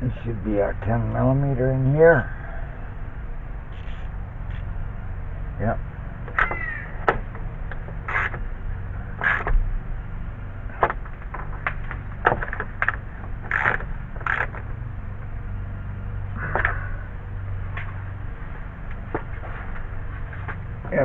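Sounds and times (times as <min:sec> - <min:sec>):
steady low hum: 0:00.0 - 0:21.0
short rasps: 0:03.7 - 0:04.7, 0:08.0 - 0:08.4.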